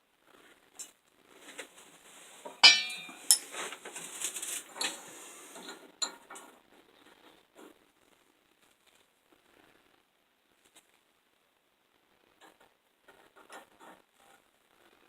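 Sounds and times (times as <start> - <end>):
ringing metallic strike: 2.6 - 3.4
steel tools clinking on metal: 2.6 - 3.6.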